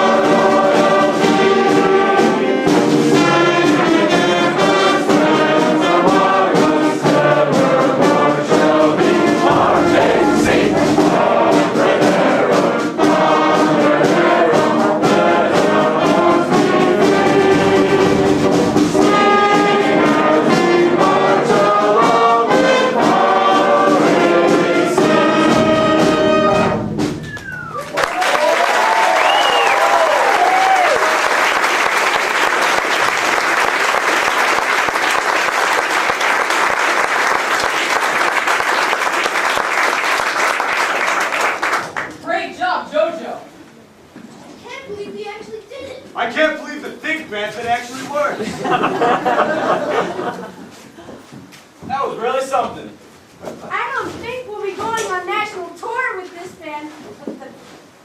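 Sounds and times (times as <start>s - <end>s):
brass band playing march: 0.0s - 27.8s
audience applause and cheering: 27.2s - 42.2s.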